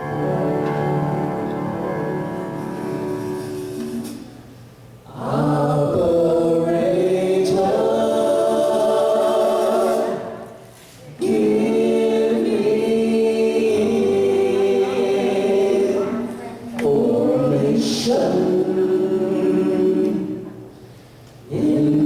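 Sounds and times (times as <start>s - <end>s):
voices singing in harmony: 5.0s - 22.0s.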